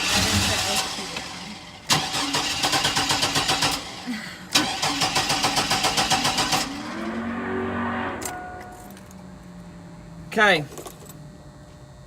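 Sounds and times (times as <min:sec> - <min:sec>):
engine cranking by starter: 0:00.0 - 0:07.2.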